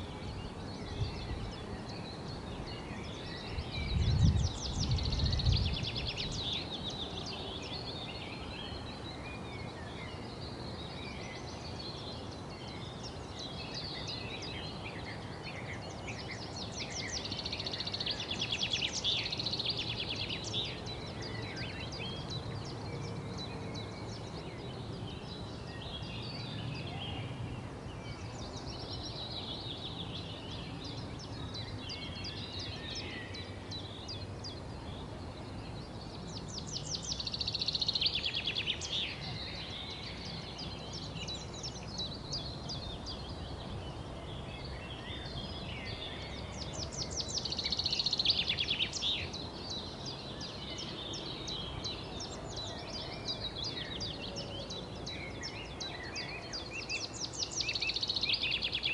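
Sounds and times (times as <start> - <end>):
low outdoor background noise: 0.0 - 58.9
songbirds chirping: 0.0 - 58.9.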